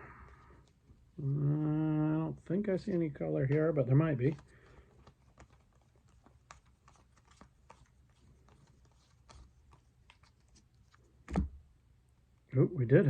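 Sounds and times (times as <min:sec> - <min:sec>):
trading cards being flipped: 0:02.9 - 0:11.6.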